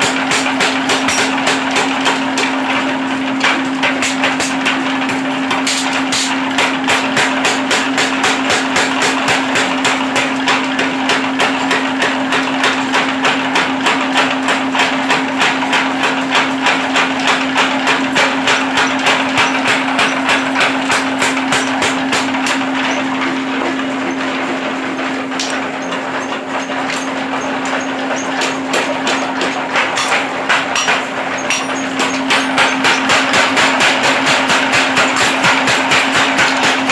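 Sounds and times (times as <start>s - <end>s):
power hammer striking: 0.0s - 2.5s, 17.0s - 22.6s, 25.3s - 36.9s
steady motor hum: 15.2s - 36.9s.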